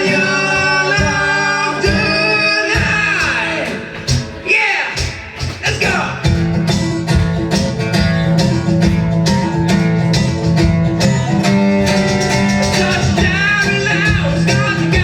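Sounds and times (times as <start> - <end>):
plucked guitar: 0.0 - 15.0
bass with steady beat: 5.4 - 15.0.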